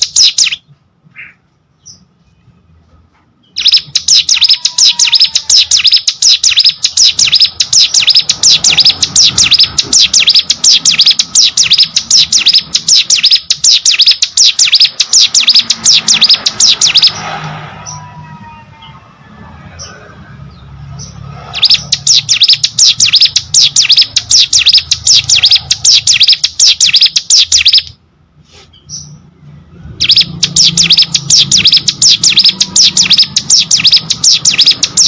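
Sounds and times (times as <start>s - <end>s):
bird singing sharp chirps: 3.4s - 18.2s, 19.8s - 27.9s, 29.9s - 35.0s.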